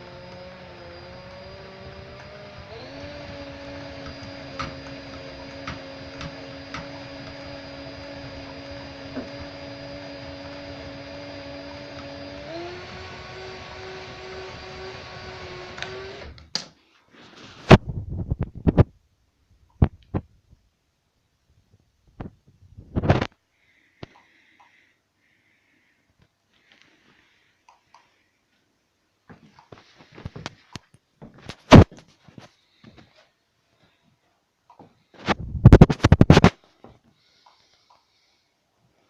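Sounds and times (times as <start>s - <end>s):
electric motor whining: 0.0s - 16.5s.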